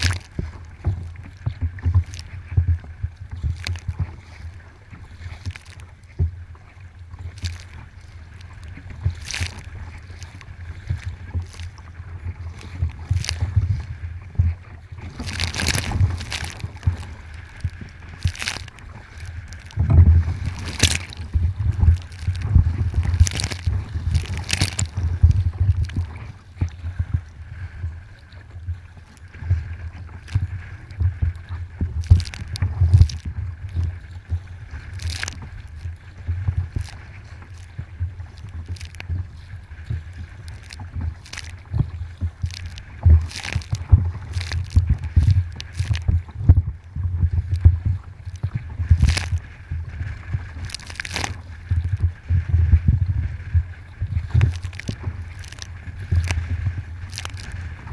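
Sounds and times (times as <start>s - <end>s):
kayak paddle splashing: 0.0s - 57.9s
water sloshing against hull: 0.0s - 57.9s
wind buffeting microphone: 39.1s - 57.9s.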